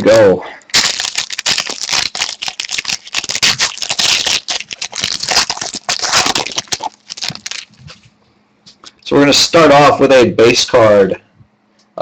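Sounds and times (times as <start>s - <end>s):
wrapper tearing and crinkling: 0.7s - 8.0s.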